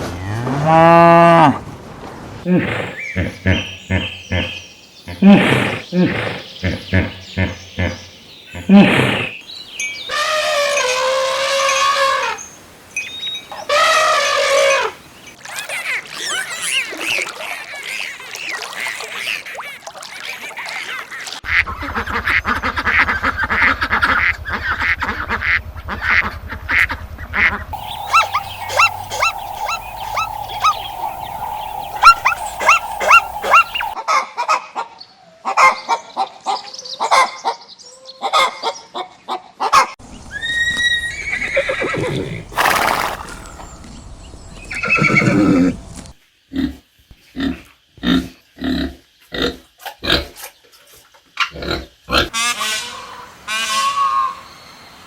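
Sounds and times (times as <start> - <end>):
waterfowl quacking and honking: 27.8 - 34.0
horse whinnying: 40.3 - 43.6, 44.7 - 45.8.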